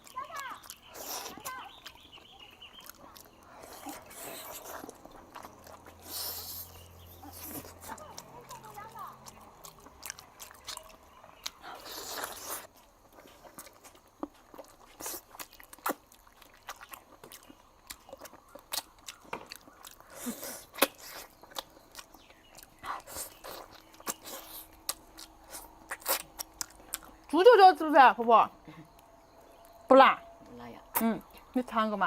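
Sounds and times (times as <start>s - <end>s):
lip smacks: 0.0s - 12.7s, 13.4s - 27.3s
person chewing: 0.0s - 27.3s.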